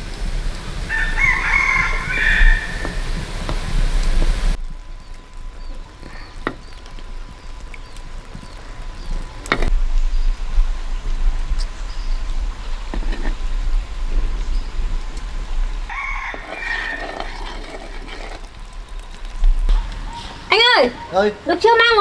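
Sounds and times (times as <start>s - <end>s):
rooster crowing: 0.8s - 3.2s, 15.9s - 18.0s.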